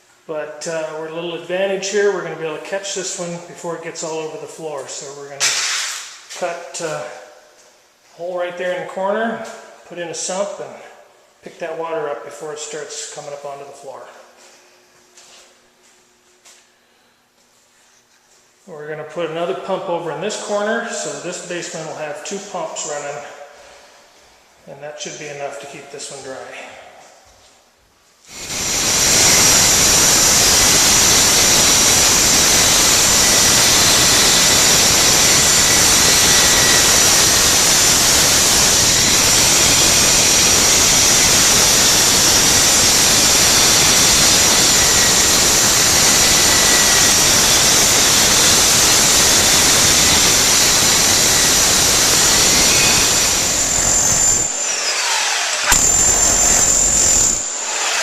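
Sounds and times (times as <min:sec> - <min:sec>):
power tool cutting concrete: 0:28.3 - 0:58.0.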